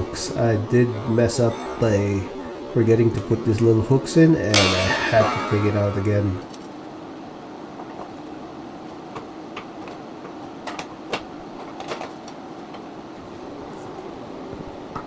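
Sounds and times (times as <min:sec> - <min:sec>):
steady hum: 0:00.0 - 0:06.5.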